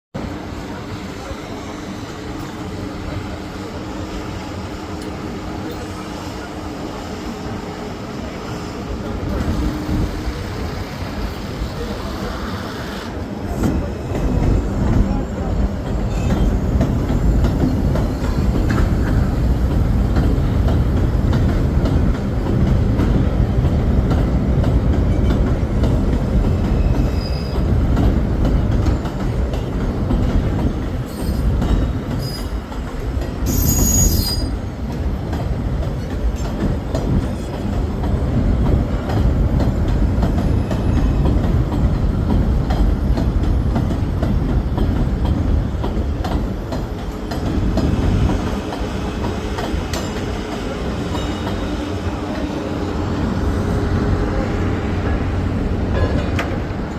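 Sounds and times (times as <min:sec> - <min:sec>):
subway train rumbling: 0:00.1 - 0:56.9
train wheels squealing: 0:26.7 - 0:27.7, 0:31.0 - 0:32.7, 0:33.4 - 0:34.7.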